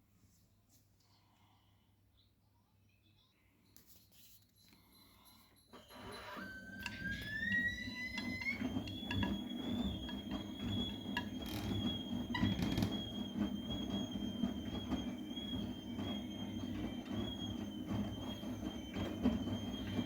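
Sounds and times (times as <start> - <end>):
washing machine drum spinning: 5.8 - 20.0.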